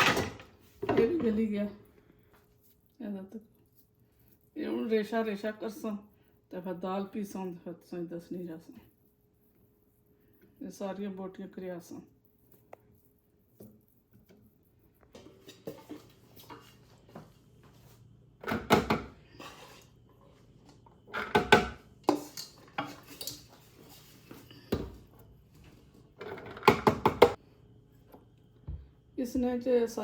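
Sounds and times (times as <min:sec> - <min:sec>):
metal utensils clattering on pot: 0:21.1 - 0:24.1.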